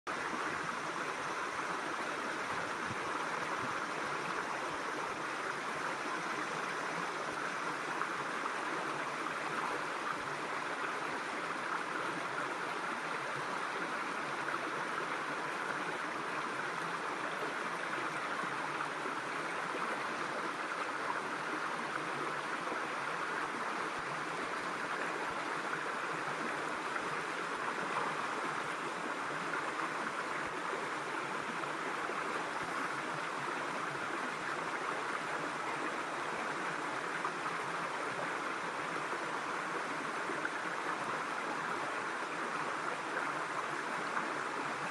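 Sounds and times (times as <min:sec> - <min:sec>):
stream water flowing over rocks: 0:00.1 - 0:44.9.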